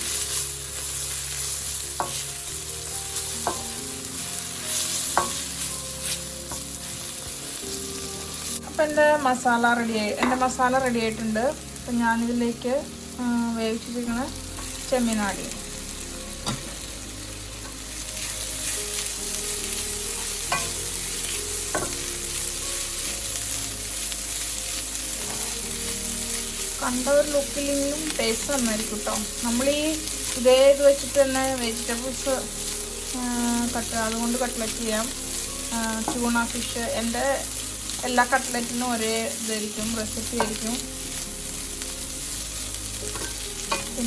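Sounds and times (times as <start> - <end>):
onion masala sizzling in oil: 0.0 - 44.0.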